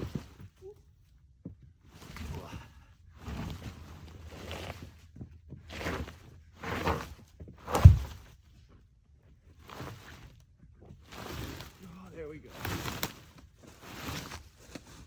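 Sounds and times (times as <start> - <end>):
heavy thud: 7.7 - 8.2
wood knocking and cracking: 7.7 - 8.2.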